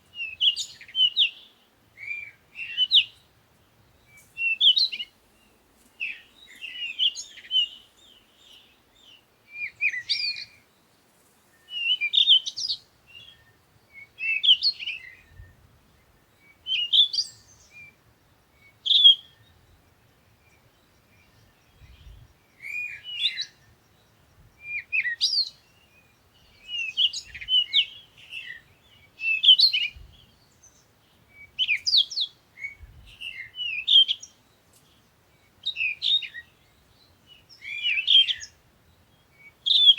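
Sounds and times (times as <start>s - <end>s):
bird chirping: 0.1s - 10.9s, 11.5s - 39.9s.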